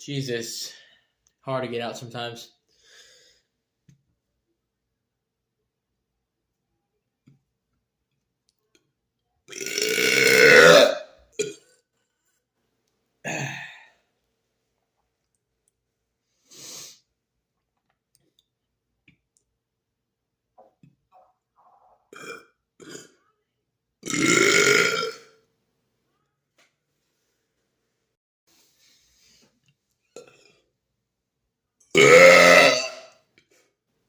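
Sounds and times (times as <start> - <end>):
man belching: 9.5 - 11.6, 13.3 - 13.9, 22.1 - 23.2, 24.0 - 25.3, 31.9 - 33.1.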